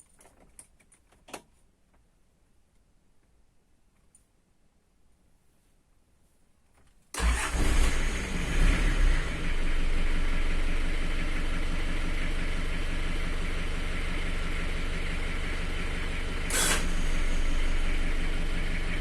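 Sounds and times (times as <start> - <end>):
car engine revving: 7.2 - 19.0.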